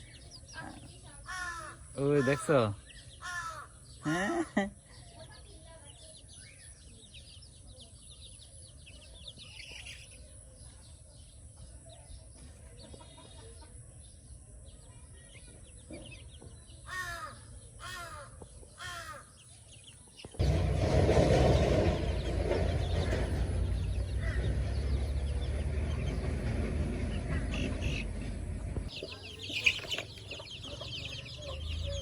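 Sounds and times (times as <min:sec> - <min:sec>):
crow cawing: 0:01.3 - 0:03.8, 0:16.9 - 0:19.3, 0:24.2 - 0:24.5.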